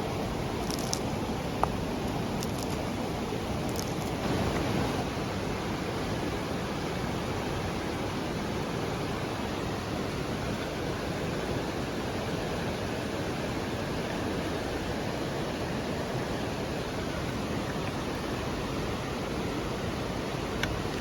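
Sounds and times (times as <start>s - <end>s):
steady rushing noise: 0.0s - 6.4s.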